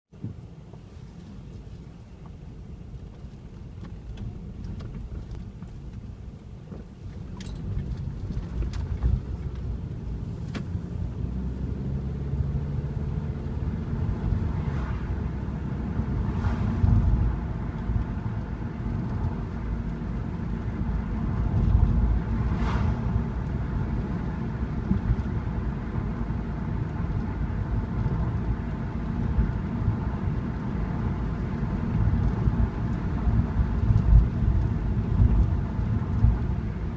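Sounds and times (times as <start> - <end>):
car engine and tyres rumbling: 0.1 - 36.9.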